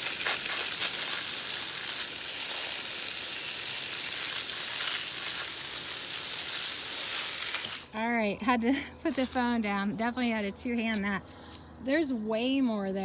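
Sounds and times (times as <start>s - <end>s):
water spraying: 0.0s - 7.9s.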